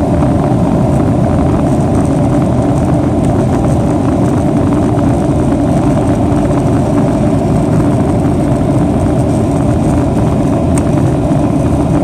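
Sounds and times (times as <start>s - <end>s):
jet engines rumbling with whine: 0.0s - 12.0s.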